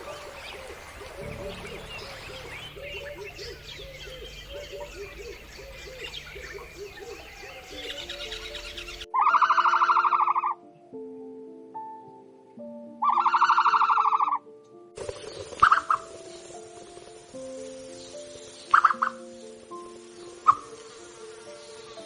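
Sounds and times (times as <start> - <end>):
high bird chirps: 0.0 - 10.4
short repeated low bird calls: 0.0 - 10.4
background music: 0.0 - 22.0.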